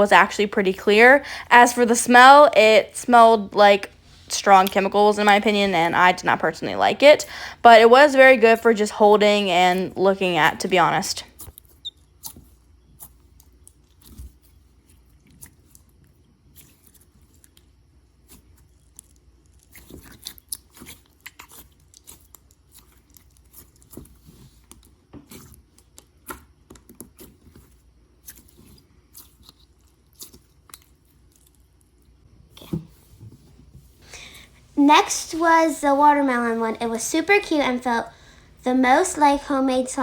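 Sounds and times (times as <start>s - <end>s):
slime squishing: 11.4s - 33.2s.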